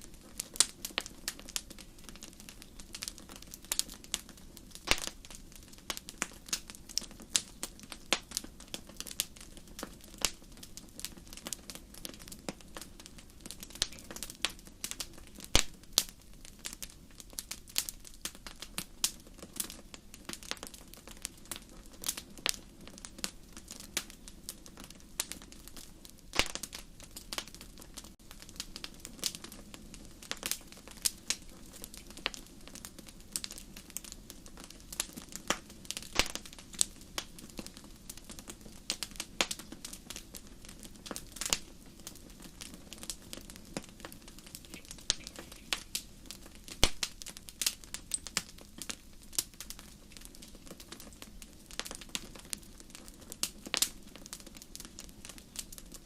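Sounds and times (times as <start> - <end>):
low hiss of fire: 0.0 - 56.0
wood fire crackling: 0.0 - 56.0.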